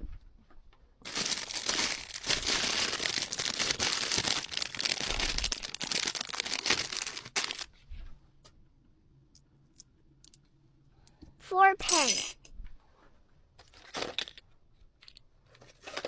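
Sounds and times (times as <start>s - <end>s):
plastic packaging crinkling: 1.0s - 7.7s, 15.6s - 16.0s.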